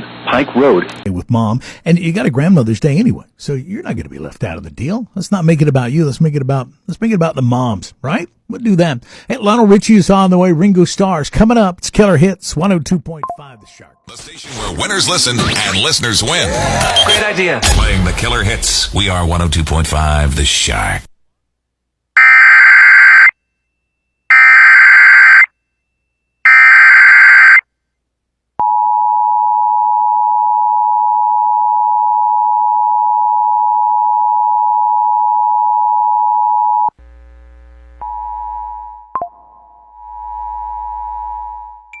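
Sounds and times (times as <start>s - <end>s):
data bursts: 14.1s - 17.3s
low hum: 37.0s - 42.0s.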